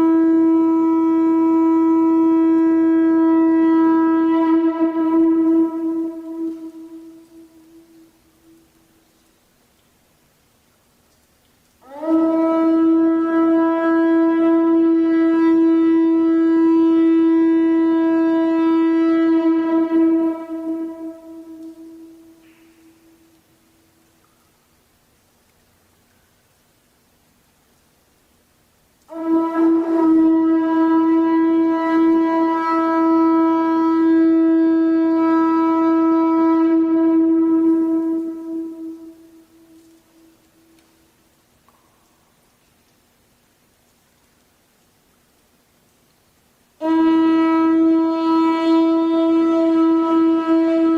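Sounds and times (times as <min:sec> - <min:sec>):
conch shell trumpet note: 0:00.0 - 0:08.8, 0:11.8 - 0:24.0, 0:29.1 - 0:41.2, 0:46.8 - 0:50.9.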